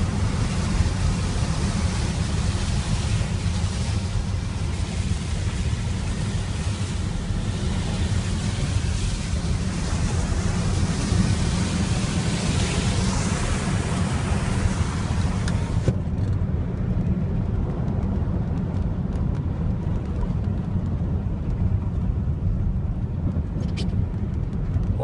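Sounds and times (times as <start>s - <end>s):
tyre hiss on wet road: 0.0s - 15.9s
car driving low rumble: 0.0s - 25.0s.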